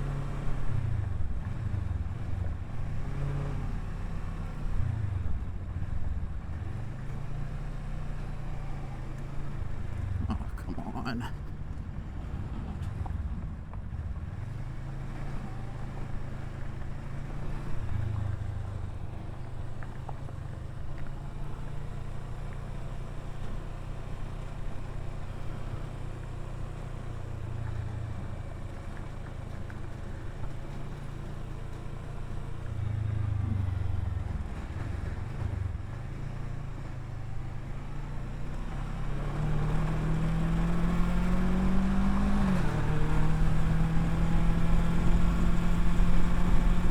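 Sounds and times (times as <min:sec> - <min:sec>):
motorcycle engine revving: 0:38.6 - 0:46.9.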